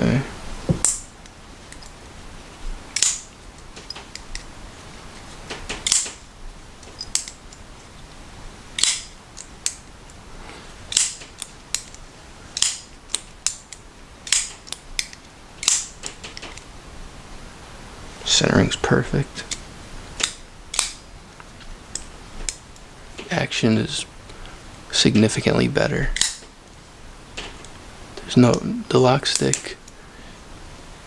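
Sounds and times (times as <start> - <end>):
folding knife snapping open: 5.8 - 6.2, 8.8 - 9.8, 10.9 - 12.0, 14.3 - 16.6, 26.2 - 26.4.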